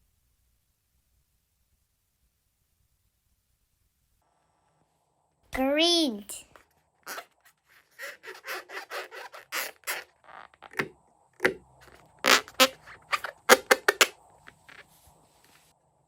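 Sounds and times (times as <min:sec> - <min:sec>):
slime crackling rasps: 0:08.0 - 0:10.8.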